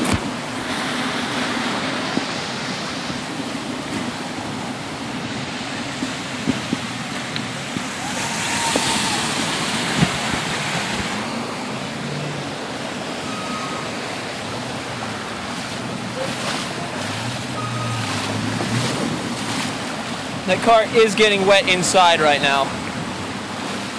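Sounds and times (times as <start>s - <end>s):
heavy rain: 0.0s - 23.9s
rushing floodwater: 0.0s - 23.9s.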